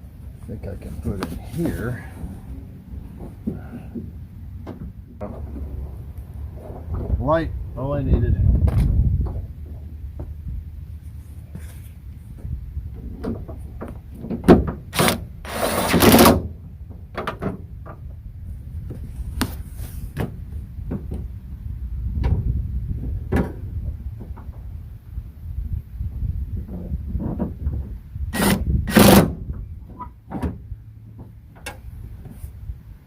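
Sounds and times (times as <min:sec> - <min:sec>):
low rumble: 0:00.0 - 0:14.2
scrape: 0:11.0 - 0:12.0, 0:19.0 - 0:20.1.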